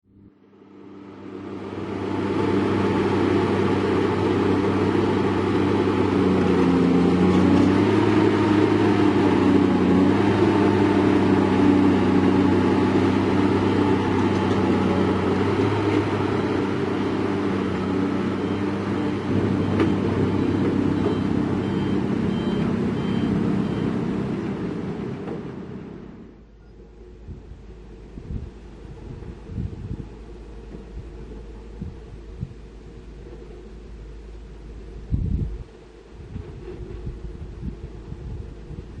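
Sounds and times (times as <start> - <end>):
heavy diesel engine running: 0.2 - 39.0
faint high beeps: 17.8 - 23.9.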